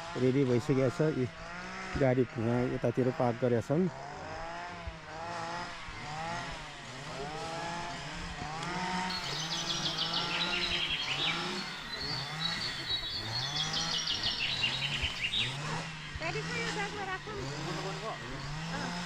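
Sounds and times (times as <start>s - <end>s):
songbird singing trills: 9.1s - 16.5s.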